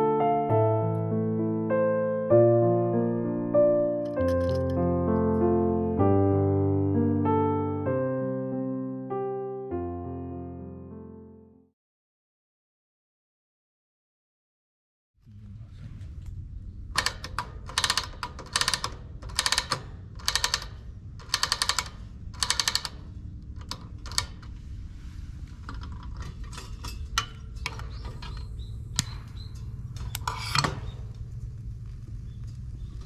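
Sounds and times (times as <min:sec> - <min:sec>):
steady low hum: 0:15.2 - 0:33.0
ratcheting mechanical clicking: 0:16.9 - 0:24.6
scattered clicks and knocks: 0:17.0 - 0:24.6.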